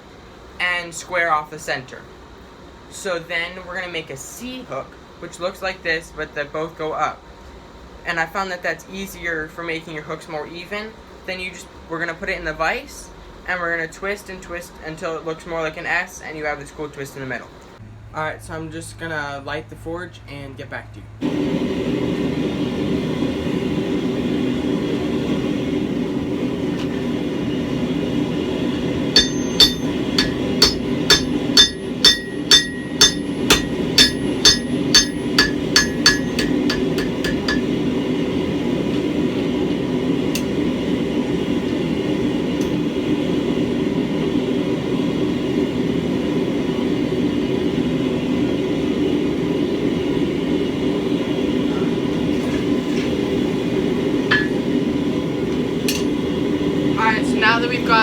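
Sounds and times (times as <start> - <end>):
hammer striking steel on anvil: 29.2 - 37.8, 54.3 - 54.8, 55.9 - 56.1.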